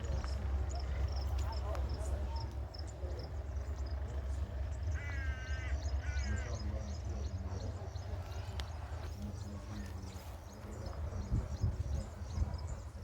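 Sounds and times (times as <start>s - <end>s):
wind rumble on microphone: 8.0s - 13.0s.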